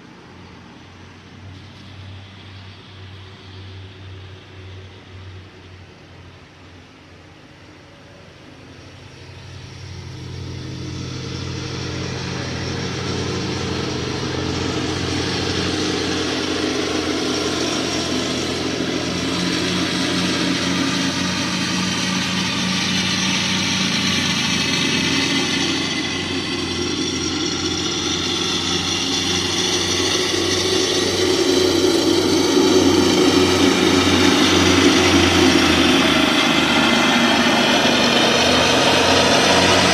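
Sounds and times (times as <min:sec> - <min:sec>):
lawnmower engine running: 0:09.0 - 0:39.9.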